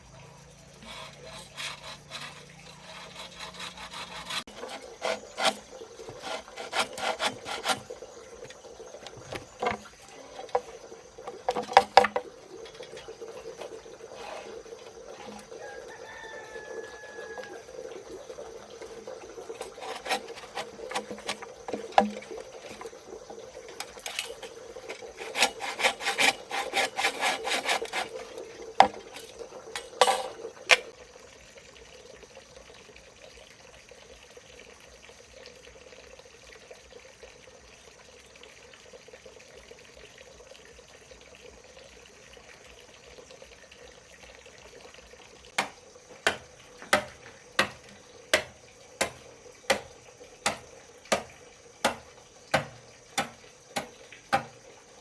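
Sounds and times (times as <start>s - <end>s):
scraping or sawing wood: 0.8s - 8.0s, 13.6s - 15.5s, 18.8s - 22.9s, 23.7s - 30.9s
sharp knocks on wood: 45.6s - 54.6s
sharp strikes on wood: 45.6s - 54.6s.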